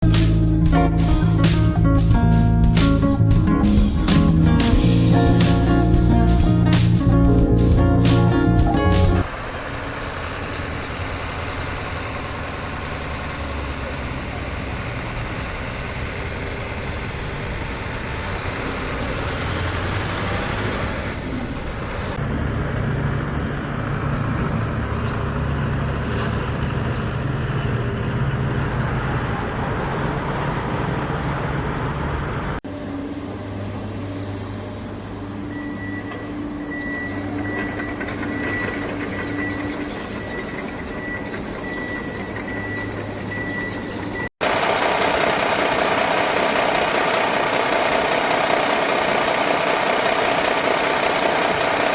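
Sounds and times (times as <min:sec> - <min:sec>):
reversing beep: 0:35.5 - 0:44.3.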